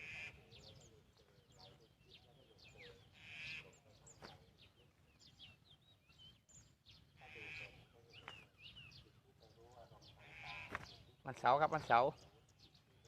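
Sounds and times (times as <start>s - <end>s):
small birds chirping: 0.0s - 13.0s
buzzy bird call: 2.8s - 4.3s, 7.2s - 8.2s, 10.0s - 11.1s.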